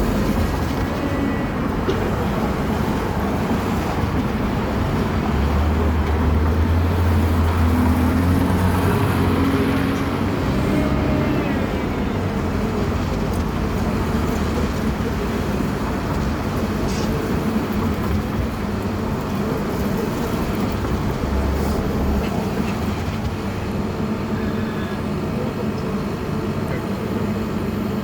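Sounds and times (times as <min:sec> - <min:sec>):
vehicle engine humming: 0:00.0 - 0:28.0.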